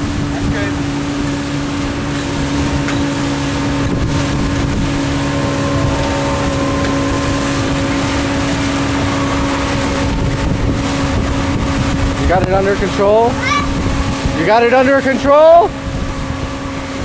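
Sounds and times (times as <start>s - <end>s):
motorboat engine droning: 0.0s - 17.0s.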